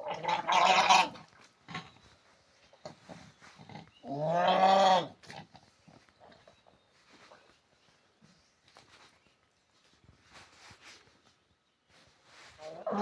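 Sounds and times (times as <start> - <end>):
calf bawling: 0.0 - 1.9, 3.7 - 5.5.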